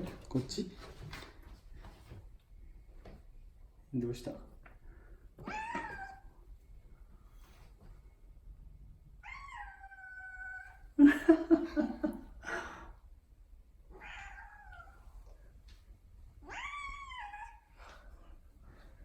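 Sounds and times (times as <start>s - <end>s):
cat meowing: 5.4s - 6.3s, 9.2s - 10.9s, 13.9s - 15.0s, 16.4s - 17.7s.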